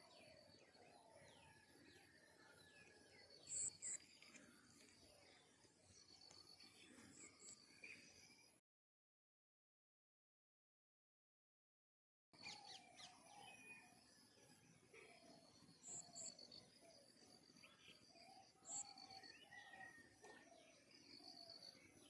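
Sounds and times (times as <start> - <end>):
small birds chirping: 0.0 - 8.6.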